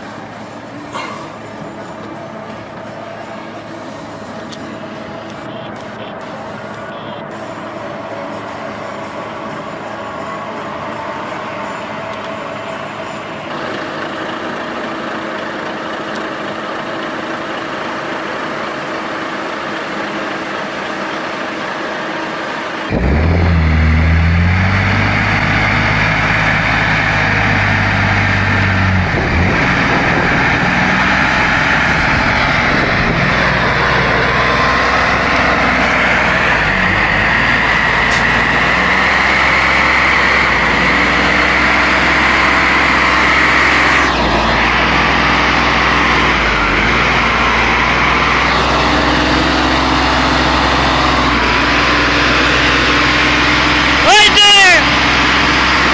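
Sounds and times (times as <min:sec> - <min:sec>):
truck diesel engine running: 0:00.0 - 0:55.9.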